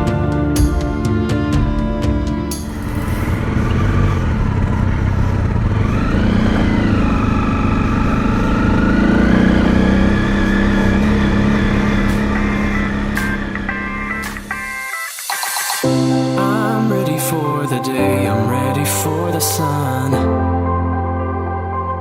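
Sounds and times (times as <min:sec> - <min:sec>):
motorcycle engine accelerating: 0:00.0 - 0:14.9.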